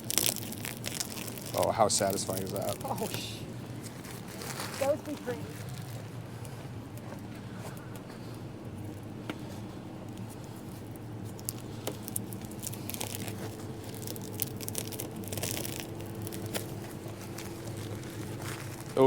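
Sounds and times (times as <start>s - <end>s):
plastic film crinkling: 0.0s - 7.0s, 10.1s - 19.0s
steady low hum: 0.0s - 19.0s.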